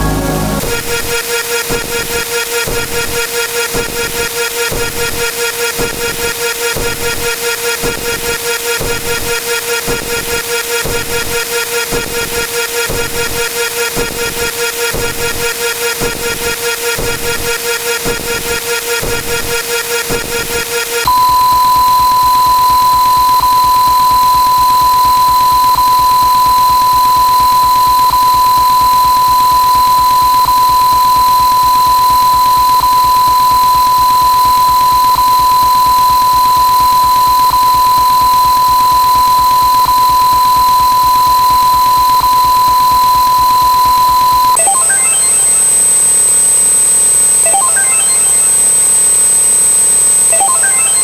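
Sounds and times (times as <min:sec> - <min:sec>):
high-pitched electronic beep tone: 0:00.0 - 0:01.8, 0:20.0 - 0:51.0
rapid electronic pulsing: 0:00.0 - 0:07.2, 0:07.8 - 0:21.0.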